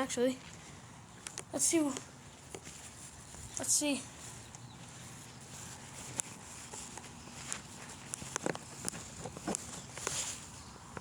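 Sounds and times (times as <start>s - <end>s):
outdoor background hiss: 0.0s - 11.0s.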